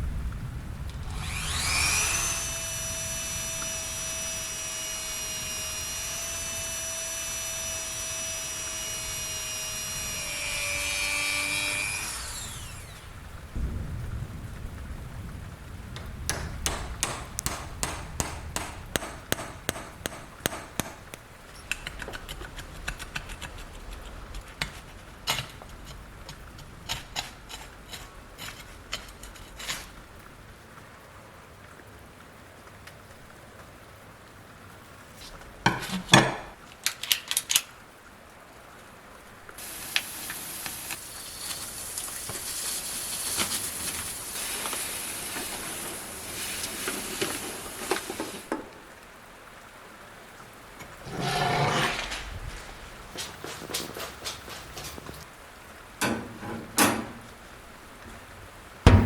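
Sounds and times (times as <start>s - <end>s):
power tool whining: 1.0s - 13.2s
sharp irregular clicks and taps: 16.0s - 25.5s.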